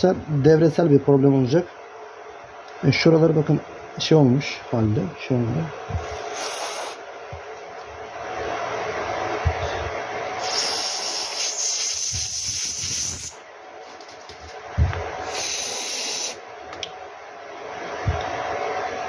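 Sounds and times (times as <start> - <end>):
aerosol spray hissing: 6.1 - 7.0, 10.4 - 13.4, 15.2 - 16.4.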